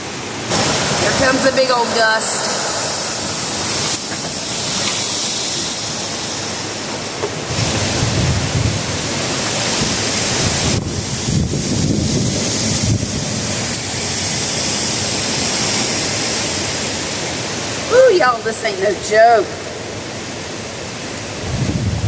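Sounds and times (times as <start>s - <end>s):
hurricane wind gusts: 0.0s - 22.0s
rain hiss: 0.0s - 22.0s
wind buffeting microphone: 0.4s - 6.6s, 7.4s - 14.3s, 21.3s - 22.0s.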